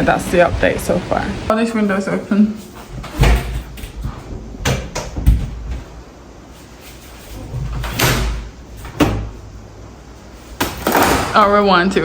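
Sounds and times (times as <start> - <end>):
windows knocking and thudding shut: 2.9 - 5.9, 7.4 - 9.4
window banging shut: 7.5 - 9.4.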